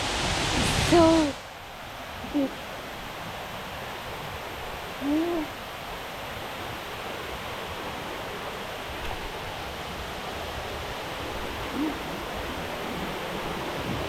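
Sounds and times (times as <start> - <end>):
waterfall roaring: 0.0 - 14.0
hoot-like call: 5.0 - 5.5, 11.6 - 12.3.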